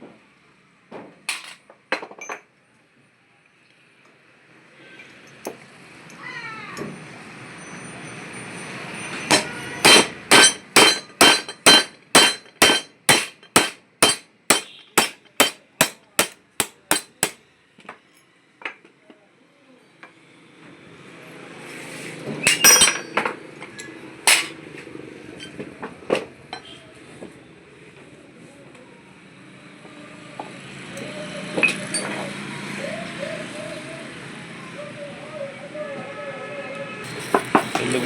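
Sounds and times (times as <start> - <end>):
hammer striking metal: 9.3 - 17.4, 24.3 - 24.6.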